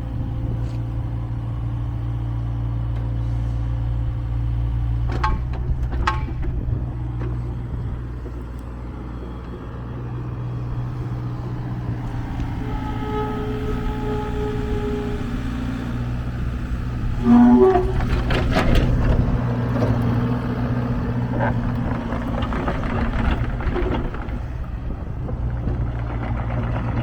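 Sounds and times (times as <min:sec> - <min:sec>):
excavator diesel engine running: 0:00.0 - 0:27.0
loud horn-like blast: 0:12.0 - 0:15.4, 0:17.0 - 0:18.2.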